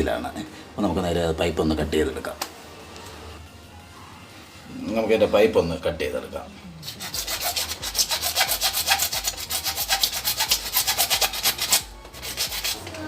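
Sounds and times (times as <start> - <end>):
hand saw cutting plastic pipe: 6.8 - 12.9.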